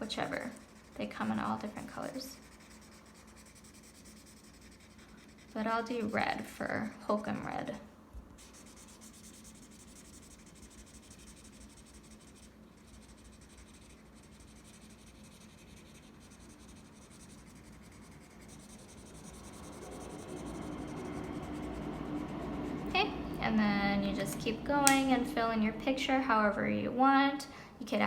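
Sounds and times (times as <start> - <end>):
colouring tool scratching on paper: 0.0 - 7.5, 8.4 - 22.8.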